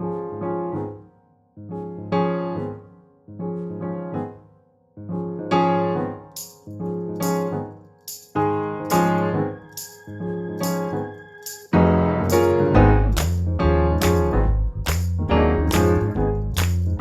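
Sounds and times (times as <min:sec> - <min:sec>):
piano chords: 0:00.0 - 0:17.0
bass and band: 0:12.3 - 0:17.0.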